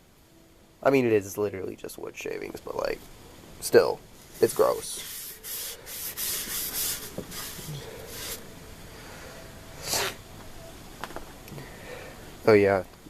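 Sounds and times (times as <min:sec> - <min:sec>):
wipe rubbing on wood: 0:04.3 - 0:08.4.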